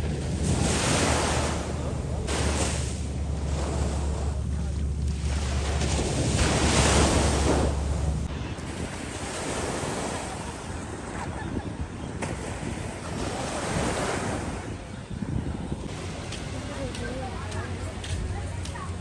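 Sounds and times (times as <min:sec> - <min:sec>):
sea waves washing onto beach: 0:00.0 - 0:11.3, 0:15.8 - 0:19.0
wind buffeting microphone: 0:00.0 - 0:19.0.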